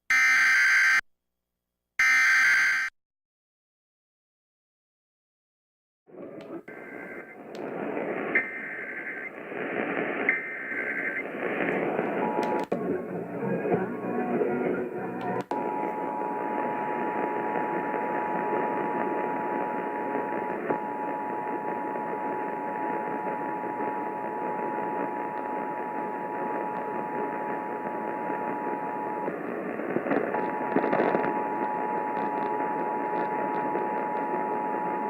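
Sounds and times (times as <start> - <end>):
two-tone alarm: 0.1 - 1.0, 2.0 - 2.9
radio static hiss: 6.1 - 35.0.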